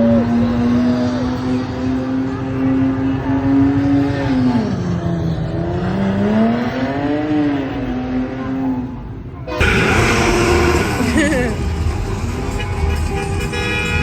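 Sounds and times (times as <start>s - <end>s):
low traffic rumble: 0.0s - 14.0s
vehicle engine running: 9.6s - 14.0s.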